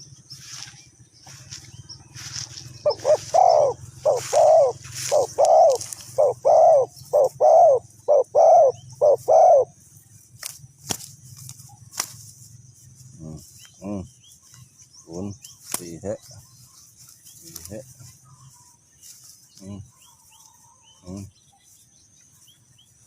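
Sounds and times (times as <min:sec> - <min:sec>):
dove cooing: 0:02.1 - 0:09.8.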